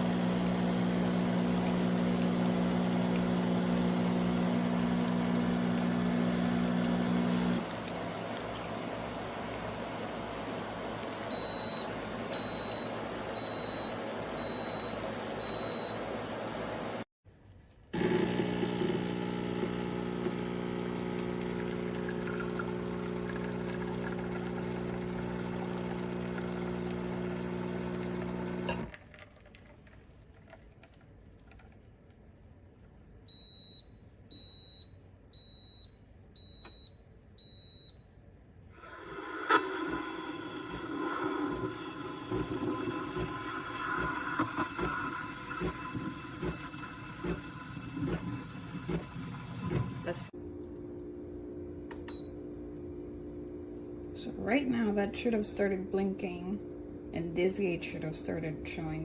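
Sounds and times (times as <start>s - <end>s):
espresso machine beeping: 0.0s - 7.6s, 11.3s - 16.1s, 18.0s - 28.9s, 38.8s - 50.3s
machine electric hum: 18.0s - 28.9s
mechanical hum: 32.3s - 59.0s.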